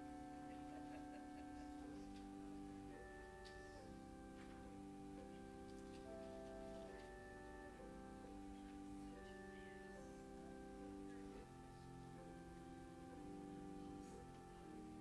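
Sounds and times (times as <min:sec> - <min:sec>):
faint keyboard chords: 0:00.0 - 0:15.0.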